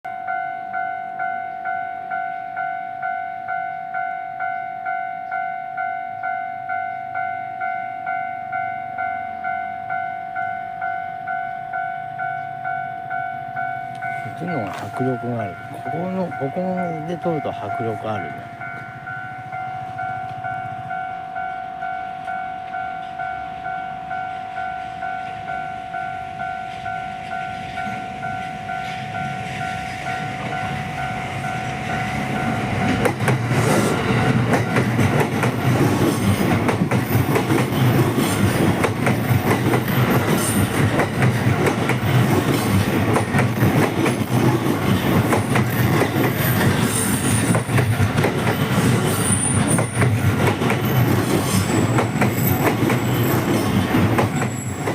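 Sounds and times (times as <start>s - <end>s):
level-crossing warning bell: 0.1s - 54.9s
electric train running: 6.2s - 54.9s
train wheel clatter on rails: 26.7s - 54.9s.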